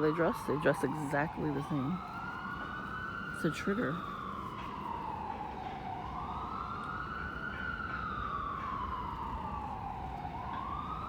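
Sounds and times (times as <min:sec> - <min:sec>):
emergency vehicle siren wailing: 0:00.0 - 0:11.0.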